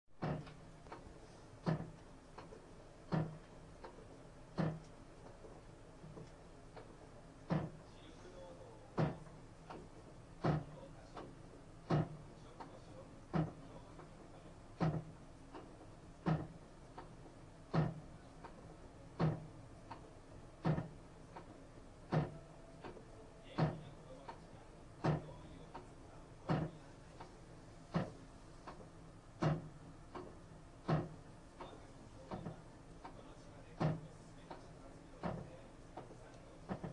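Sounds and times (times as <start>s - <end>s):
washing machine knocking: 0.2s - 0.7s, 1.6s - 2.0s, 3.1s - 3.5s, 4.6s - 4.8s, 7.5s - 7.9s, 8.9s - 9.8s, 10.4s - 10.9s, 11.8s - 12.3s, 13.3s - 13.7s, 14.8s - 15.2s, 16.2s - 16.6s, 17.7s - 18.2s, 19.2s - 19.5s, 20.6s - 21.0s, 22.1s - 22.5s, 23.6s - 24.1s, 25.0s - 25.6s, 26.4s - 26.9s, 29.4s - 32.6s, 33.6s - 34.1s, 35.2s - 36.9s.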